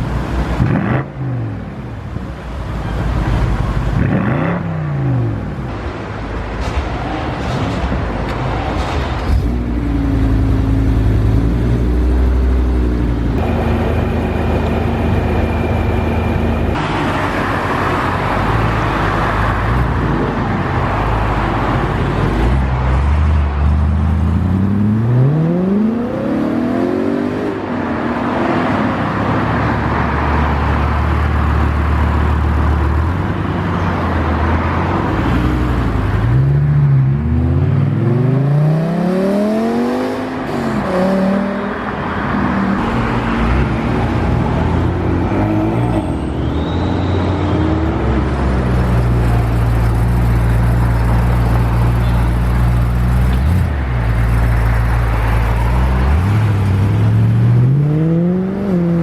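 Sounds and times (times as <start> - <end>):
car engines revving: 0.0 - 59.0
low engine notes: 9.3 - 22.6.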